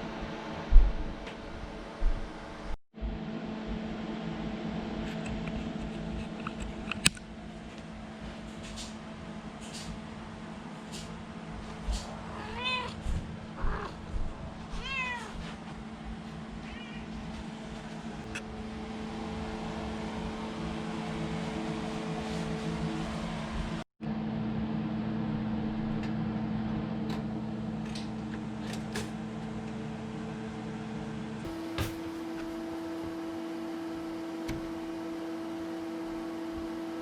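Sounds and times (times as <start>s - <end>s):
exhaust fan humming: 0.0s - 37.0s
cat meowing: 12.3s - 13.0s, 13.6s - 14.0s, 14.7s - 15.4s, 16.6s - 17.1s.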